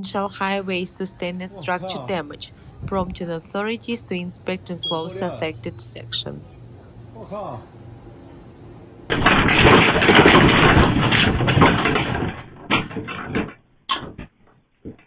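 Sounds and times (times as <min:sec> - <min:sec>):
room contents rattling and clattering: 0:09.1 - 0:15.0
separate knocks: 0:09.1 - 0:15.0.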